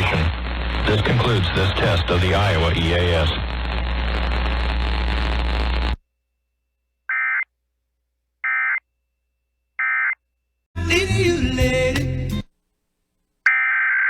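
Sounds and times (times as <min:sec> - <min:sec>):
steady hiss with low hum: 0:00.0 - 0:06.0
music: 0:10.8 - 0:12.5.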